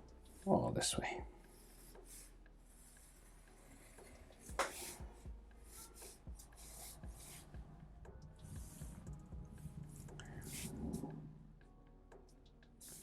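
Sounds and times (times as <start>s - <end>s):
pencil sketching on paper: 1.4s - 11.4s.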